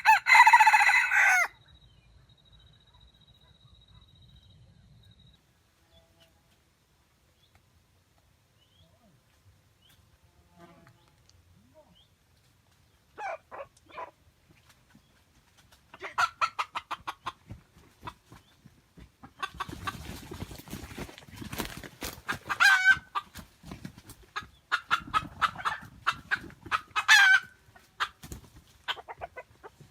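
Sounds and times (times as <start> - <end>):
chicken cries: 0.0 - 1.5
chickens clucking: 13.1 - 20.6, 21.7 - 29.9.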